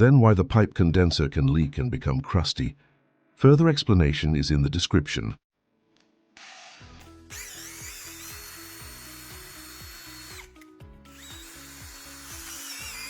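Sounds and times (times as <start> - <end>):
power tool whining: 6.4 - 13.0.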